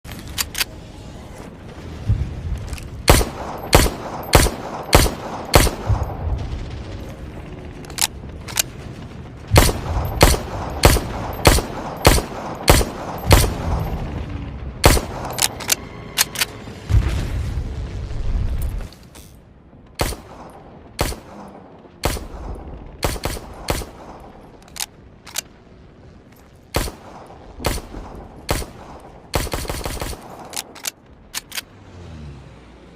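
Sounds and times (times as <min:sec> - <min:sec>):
low rumble: 0:00.1 - 0:31.7
pistol shots: 0:03.1 - 0:06.2, 0:09.5 - 0:13.9, 0:14.8 - 0:15.8, 0:20.0 - 0:24.3, 0:26.8 - 0:30.9.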